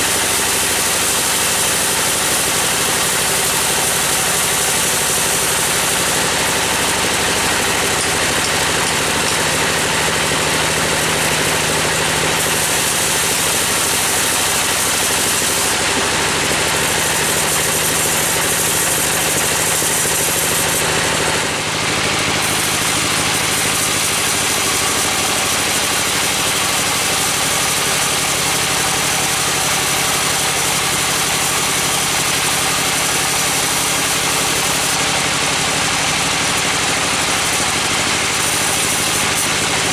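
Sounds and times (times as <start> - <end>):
engine-powered wood saw running: 0.0 - 39.9.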